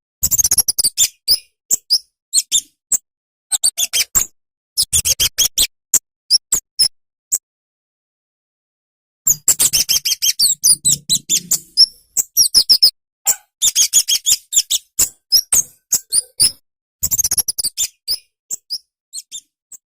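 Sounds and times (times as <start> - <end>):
bird calling in sharp high chips: 9.3 - 16.6.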